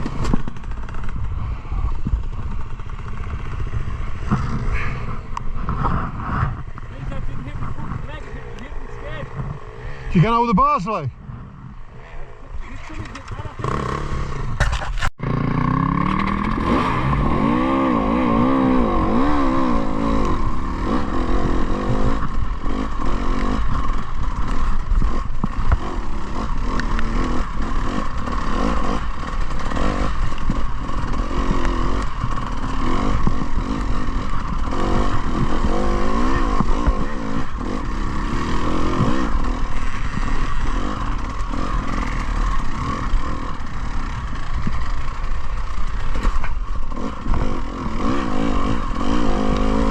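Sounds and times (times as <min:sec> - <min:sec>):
wind rush on microphone: 0:00.0 - 0:09.6
motorcycle engine revving: 0:00.0 - 0:49.9
bike knocks and rattles: 0:02.0 - 0:08.2.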